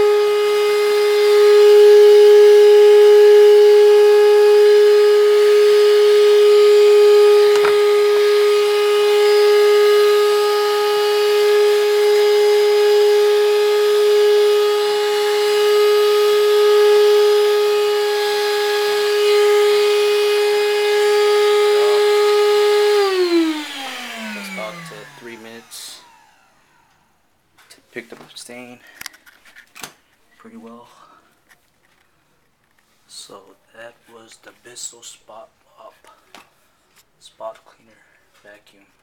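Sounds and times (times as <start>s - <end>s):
spot cleaner motor whining: 0.0s - 27.0s.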